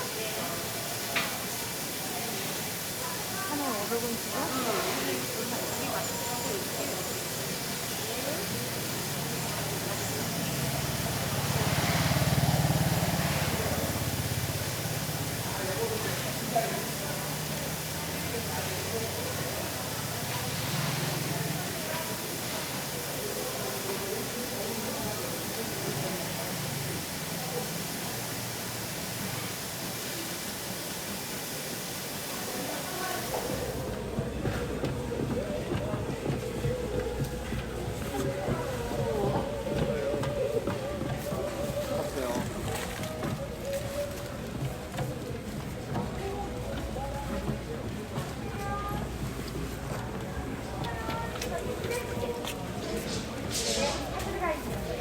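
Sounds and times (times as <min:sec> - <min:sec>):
market background hiss: 0:00.0 - 0:55.0
vehicle engine pulsing: 0:09.6 - 0:16.4.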